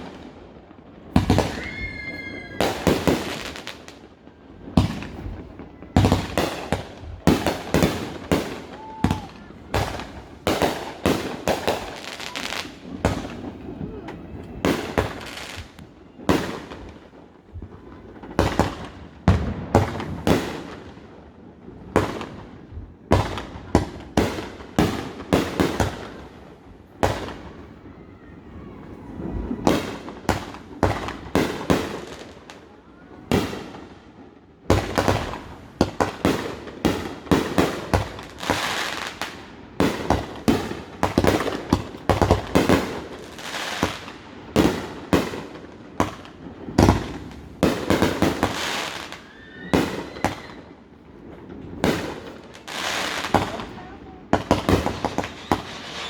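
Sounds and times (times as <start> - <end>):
fireworks banging: 0.0 - 20.9, 34.7 - 50.6, 51.2 - 56.0.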